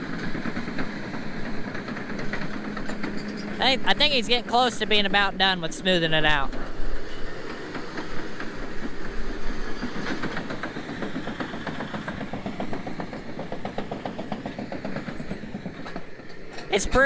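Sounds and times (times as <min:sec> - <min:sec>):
bulldozer engine running: 0:00.0 - 0:06.6
steel tracks clattering: 0:00.0 - 0:17.0.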